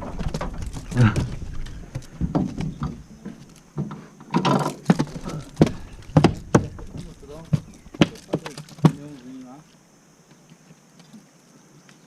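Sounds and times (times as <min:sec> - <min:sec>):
knocks and thumps on boat: 0:00.0 - 0:09.2.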